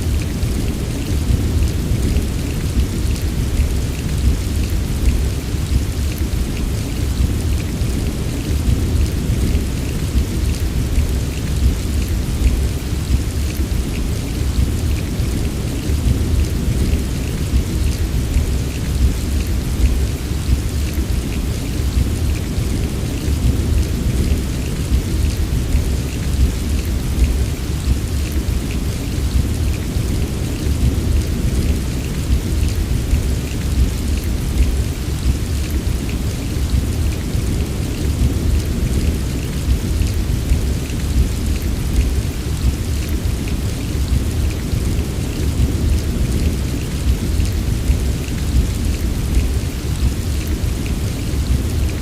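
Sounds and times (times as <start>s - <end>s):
deep continuous rumble: 0.0s - 52.0s
heavy rain falling: 0.0s - 52.0s.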